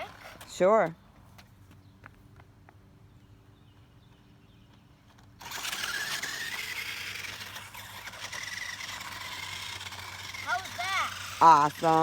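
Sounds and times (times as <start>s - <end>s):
wheels scraping on ground: 0.0s - 1.9s, 4.1s - 12.0s
electric motor whine: 5.4s - 12.0s.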